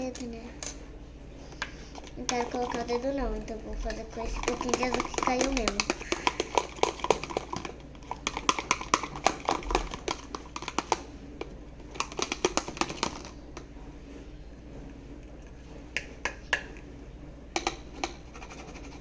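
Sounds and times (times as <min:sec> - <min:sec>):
spoon clicking against cup: 0:04.4 - 0:11.0, 0:17.6 - 0:18.2.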